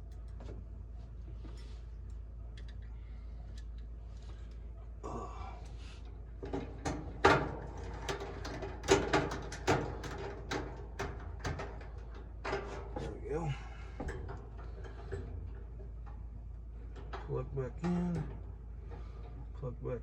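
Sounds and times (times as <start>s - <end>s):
clicks and knocks of parts handled: 1.4s - 4.6s, 5.6s - 13.2s.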